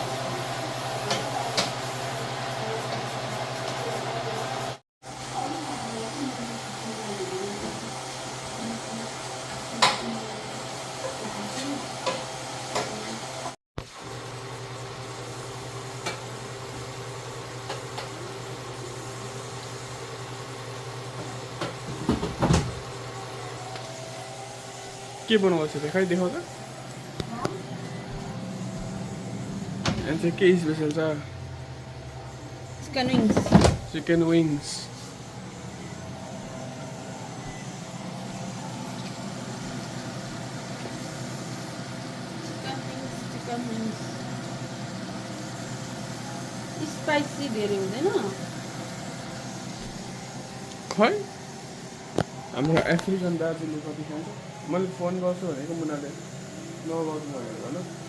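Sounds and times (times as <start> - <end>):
machine hum: 0.0 - 58.0.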